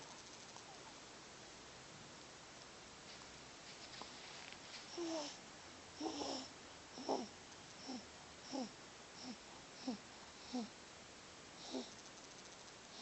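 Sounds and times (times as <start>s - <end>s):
squeaky whistling snoring: 6.0s - 10.7s, 11.6s - 12.0s.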